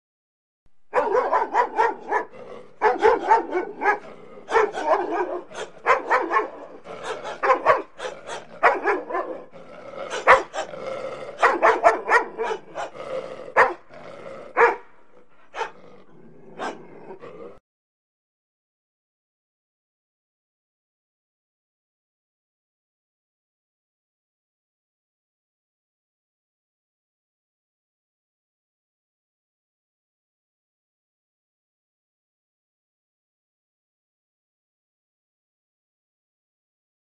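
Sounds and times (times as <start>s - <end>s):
dog barking: 0.9s - 13.9s, 14.5s - 14.9s, 15.5s - 15.8s, 16.5s - 17.2s.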